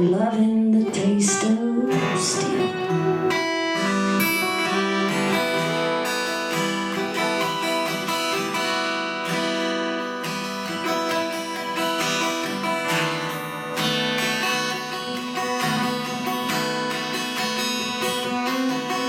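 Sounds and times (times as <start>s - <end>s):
person singing: 0.0s - 6.8s
acoustic guitar strumming chords: 0.0s - 19.0s.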